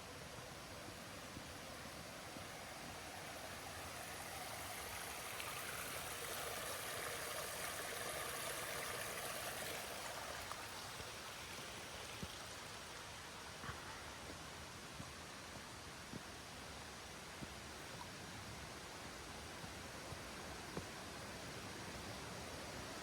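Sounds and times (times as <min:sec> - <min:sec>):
stream water rushing: 0:00.0 - 0:13.6.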